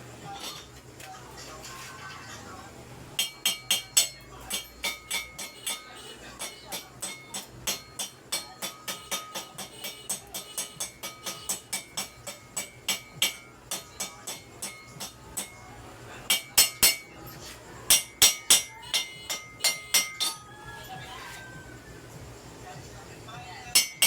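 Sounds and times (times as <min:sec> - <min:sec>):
hammer striking metal: 0:03.2 - 0:15.7, 0:16.3 - 0:17.1, 0:17.9 - 0:20.5, 0:23.8 - 0:24.0.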